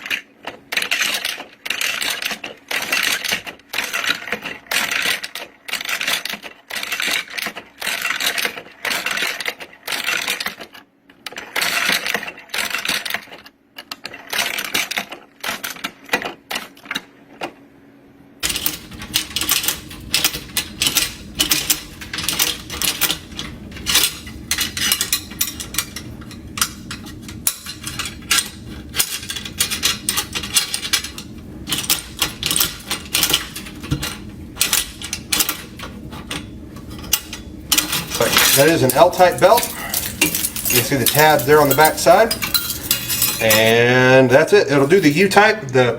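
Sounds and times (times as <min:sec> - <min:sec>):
cartridges clicking in belt loader: 0:18.4 - 0:44.0.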